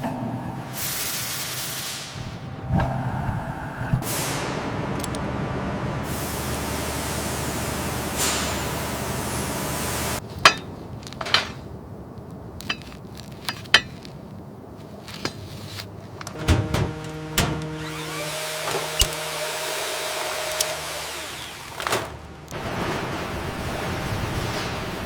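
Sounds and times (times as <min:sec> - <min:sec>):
sharp knocks and clinks: 0:10.4 - 0:11.7, 0:12.6 - 0:14.2.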